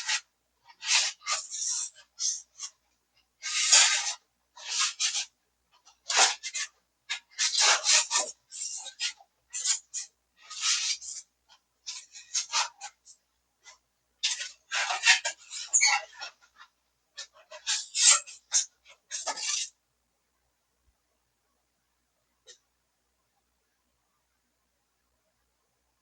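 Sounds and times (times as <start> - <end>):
styrofoam board squeaking: 0.0 - 2.8, 3.4 - 5.3, 5.9 - 11.3, 14.2 - 19.8.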